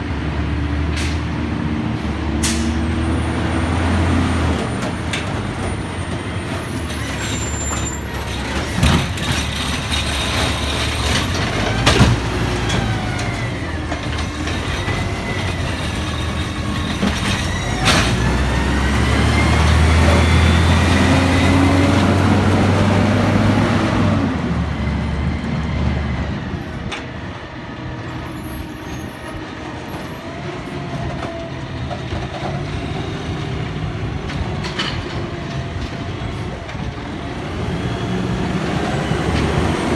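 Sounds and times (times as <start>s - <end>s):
truck diesel engine droning: 0.0s - 39.9s
high squeals: 4.7s - 11.4s, 12.8s - 22.3s.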